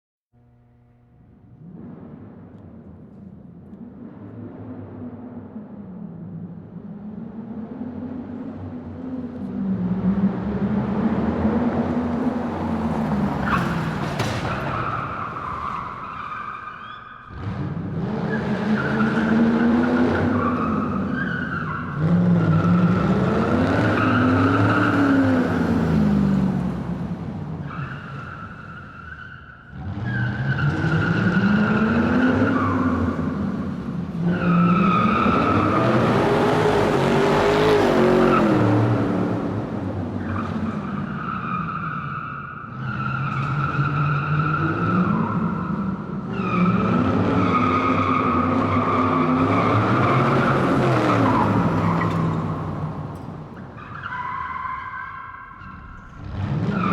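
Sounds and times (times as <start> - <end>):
car tyres squealing: 11.4 - 56.9
engine revving: 29.7 - 40.6.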